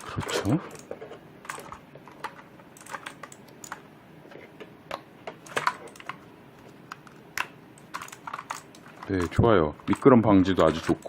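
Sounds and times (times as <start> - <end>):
mechanical keyboard clicks: 6.9 - 8.9.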